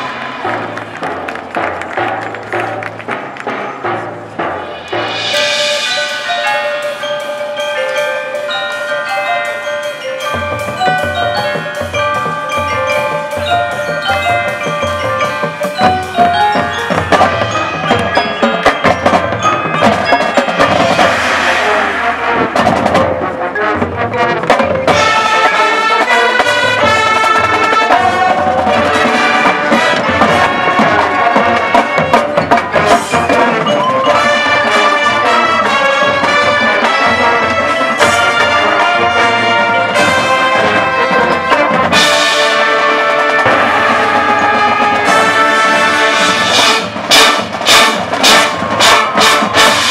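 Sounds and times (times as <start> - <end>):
mallet percussion notes: 0.0 - 49.9
sustained brass chords: 19.3 - 49.9.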